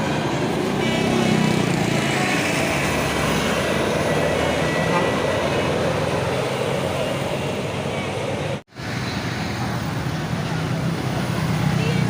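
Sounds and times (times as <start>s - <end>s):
bus driving past: 0.0s - 12.0s
people talking: 9.5s - 12.0s.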